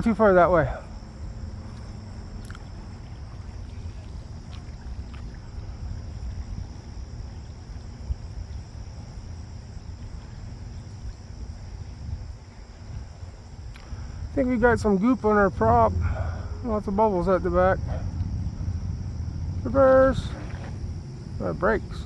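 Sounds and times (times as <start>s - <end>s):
wind rumble on microphone: 0.0s - 22.0s
faint click: 13.7s - 14.0s.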